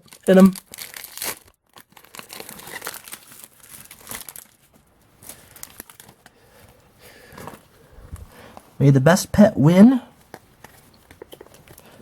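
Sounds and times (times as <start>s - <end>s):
wrapper tearing and crinkling: 0.0s - 6.3s.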